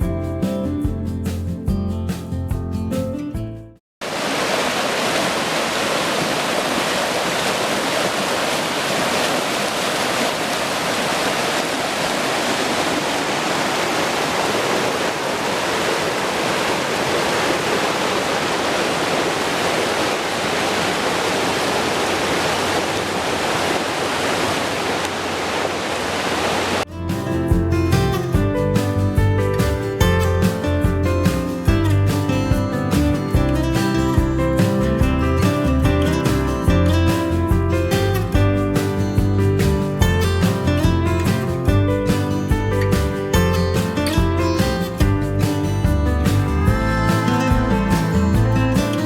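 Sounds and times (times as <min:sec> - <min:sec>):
guitar music: 0:00.0 - 0:03.8, 0:26.9 - 0:49.0
mountain stream rushing: 0:04.0 - 0:26.9, 0:42.2 - 0:49.0.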